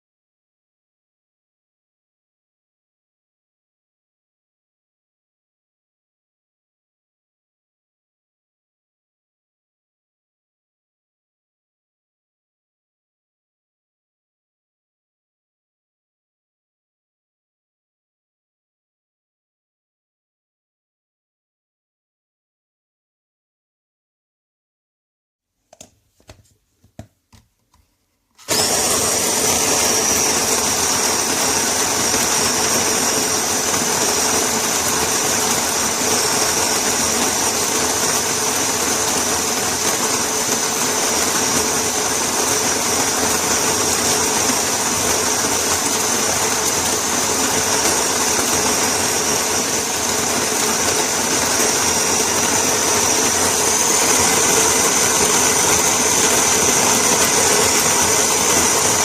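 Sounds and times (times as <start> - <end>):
electric coffee grinder whining: 28.4 - 59.0.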